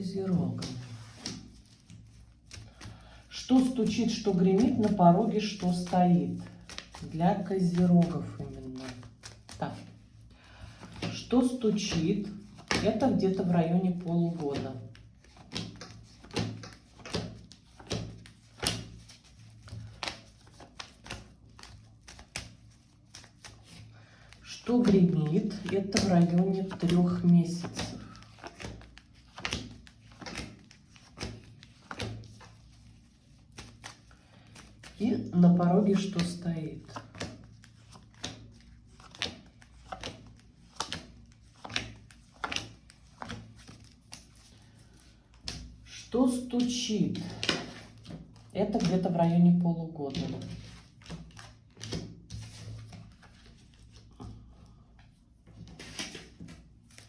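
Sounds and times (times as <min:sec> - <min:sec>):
cards tapping and slapping on table: 0:00.5 - 0:03.0, 0:10.8 - 0:13.0, 0:14.3 - 0:23.8, 0:24.6 - 0:35.0, 0:36.1 - 0:44.5, 0:46.6 - 0:48.2, 0:50.2 - 0:53.6, 0:55.5 - 0:57.0.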